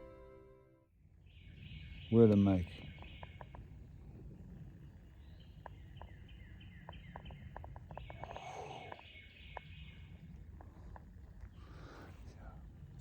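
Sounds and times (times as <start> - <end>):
faint bird chirps: 4.4 - 12.1.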